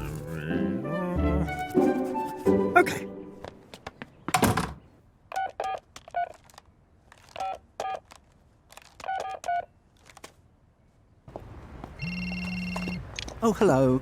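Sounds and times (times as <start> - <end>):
telephone keypad beeps: 12.0 - 13.0.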